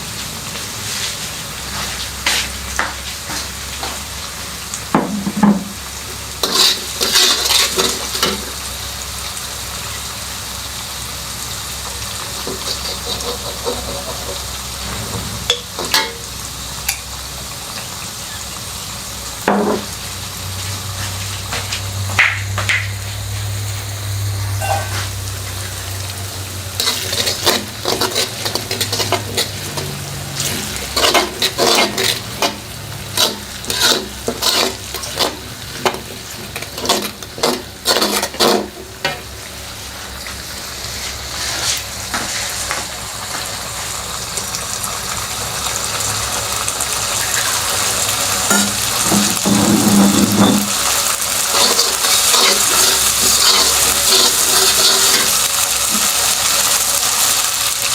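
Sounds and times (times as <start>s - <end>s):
food sizzling in a pan: 0.0s - 57.9s
spatula scraping and knocking pan: 4.9s - 5.8s, 6.4s - 8.4s, 12.4s - 16.2s, 26.8s - 39.3s, 48.5s - 50.8s, 51.5s - 56.1s.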